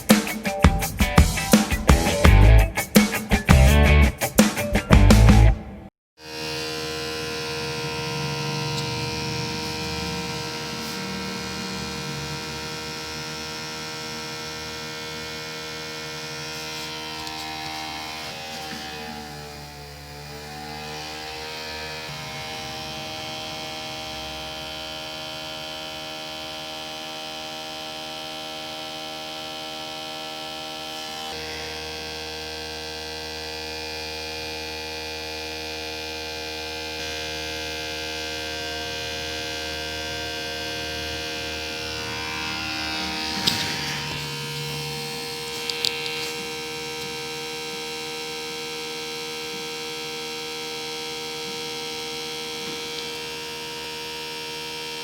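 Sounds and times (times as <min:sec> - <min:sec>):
disc drive spinning hum: 0:06.9 - 0:15.7.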